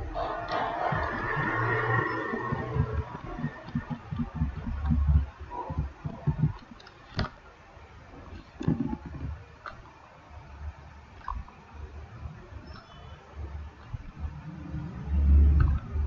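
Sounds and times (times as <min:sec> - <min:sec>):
soft low handling thumps: 0:00.9 - 0:07.4.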